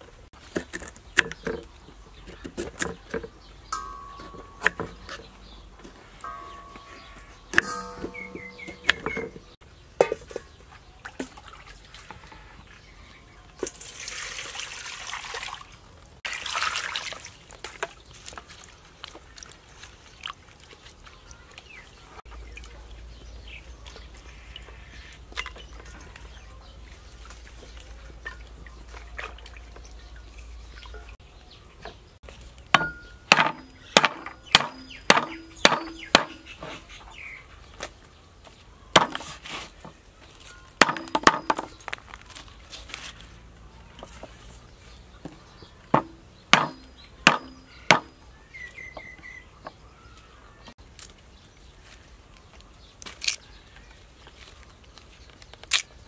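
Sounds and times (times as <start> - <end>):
small knocks: 2.3 - 10.5, 40.8 - 42.0, 45.2 - 48.2
water splashing: 13.6 - 31.2.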